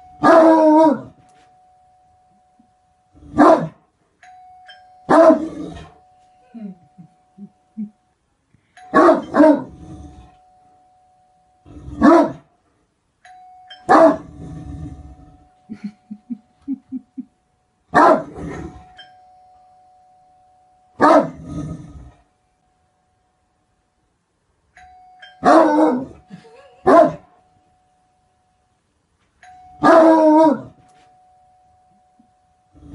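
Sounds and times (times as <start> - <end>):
faint steady tone: 0.0 - 32.9
dog barking deeply: 12.0 - 12.4, 18.0 - 18.4.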